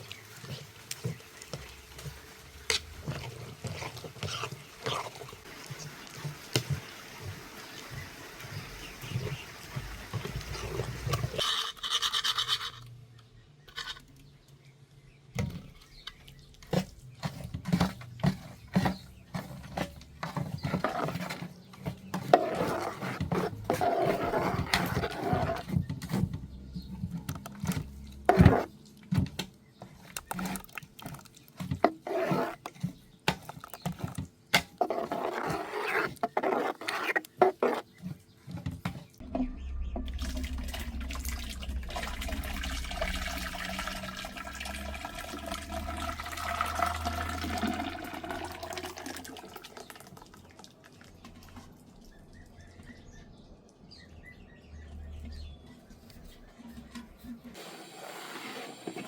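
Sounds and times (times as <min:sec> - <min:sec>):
scraping and rubbing: 0:00.0 - 0:12.9, 0:15.9 - 0:28.8, 0:29.8 - 0:48.5
low steady hum: 0:39.2 - 0:47.6.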